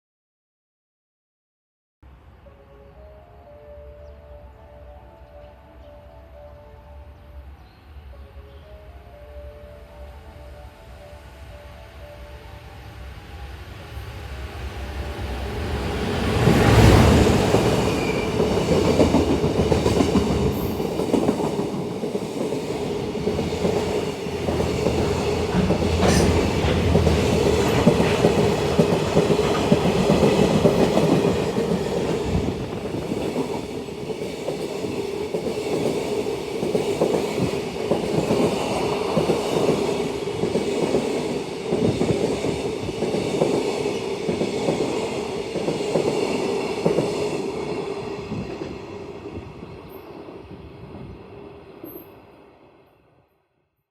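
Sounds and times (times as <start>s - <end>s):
freight train passing: 2.1s - 53.3s
wheels clattering over rail joints: 24.4s - 30.8s.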